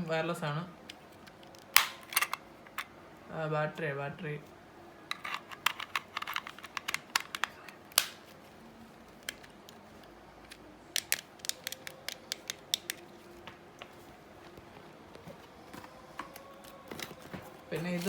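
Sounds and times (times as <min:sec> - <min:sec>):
hard plastic clicking: 0:05.1 - 0:08.2, 0:10.4 - 0:13.1.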